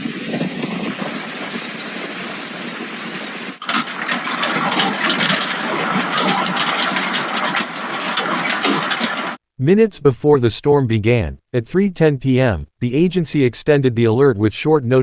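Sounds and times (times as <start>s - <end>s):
hailstones cracking on hard surfaces: 0.0s - 9.4s
heavy hail falling: 0.0s - 9.4s.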